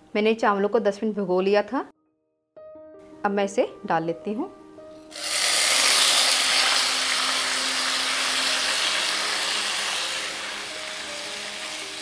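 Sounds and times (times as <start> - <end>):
rice sizzling in hot oil: 5.1 - 12.0.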